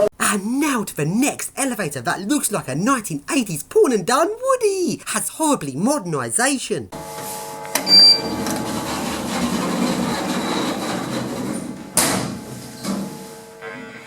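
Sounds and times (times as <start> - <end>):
lift doors shutting with a knock: 7.8 - 13.2
lift doors sliding: 7.8 - 14.0.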